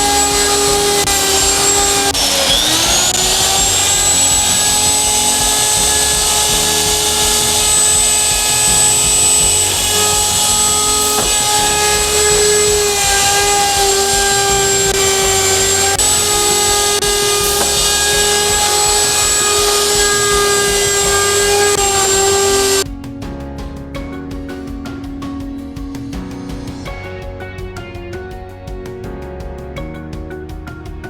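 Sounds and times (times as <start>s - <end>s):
router motor whining: 0.0s - 22.8s.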